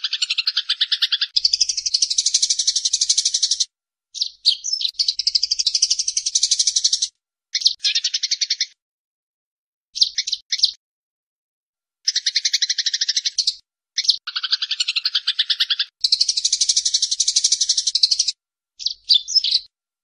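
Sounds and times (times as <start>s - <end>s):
sparrows chattering: 0.0s - 8.8s, 10.0s - 10.8s, 12.1s - 19.7s
short bird chirps: 4.2s - 8.8s, 10.0s - 10.8s, 12.1s - 19.7s.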